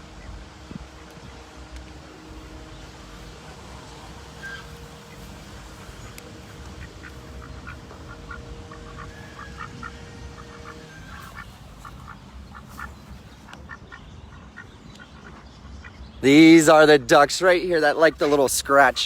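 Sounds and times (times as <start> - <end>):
ducks quacking: 0.0 - 19.0.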